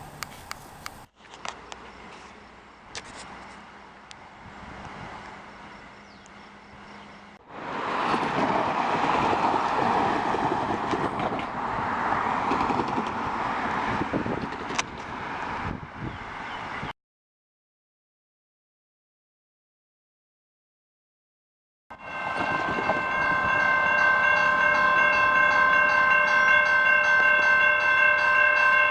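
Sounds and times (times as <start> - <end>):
train rumble and clatter: 3.2 - 16.9, 22.0 - 28.9.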